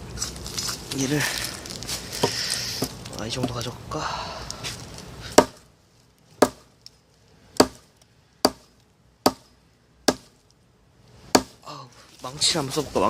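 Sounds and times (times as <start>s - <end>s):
hatchet chopping log: 5.3s - 5.7s, 6.4s - 6.7s, 7.5s - 9.5s, 10.1s - 10.4s, 11.3s - 11.6s.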